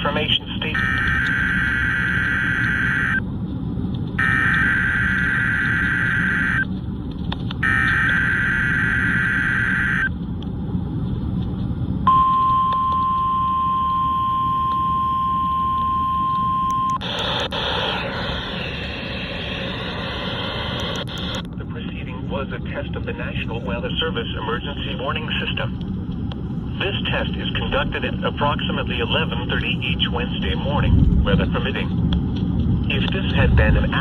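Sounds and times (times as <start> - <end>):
radio hiss: 0.0 - 3.2, 17.0 - 25.7, 26.8 - 31.9, 32.9 - 34.0
steady warning alarm tone: 0.7 - 3.2, 4.2 - 6.7, 7.6 - 10.1, 12.1 - 21.4
buzzy data bursts: 0.8 - 3.2, 4.2 - 6.6, 7.6 - 10.1.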